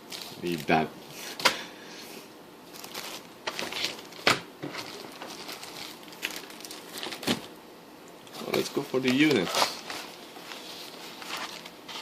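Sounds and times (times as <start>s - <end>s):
packaging rustling: 2.7s - 7.5s, 8.3s - 12.0s.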